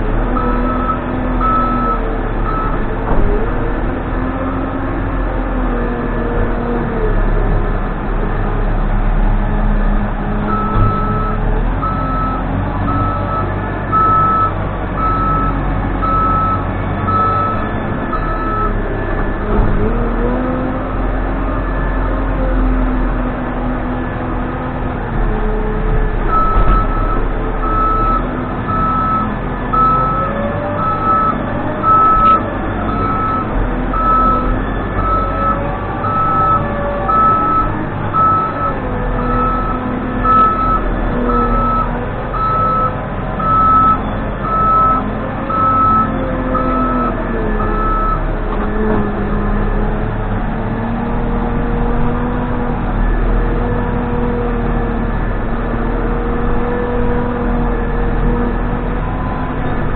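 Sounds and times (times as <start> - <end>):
backhoe diesel engine running: 0.0 - 59.9
reversing alarm beeping: 0.4 - 2.8, 10.5 - 19.4, 26.3 - 48.3.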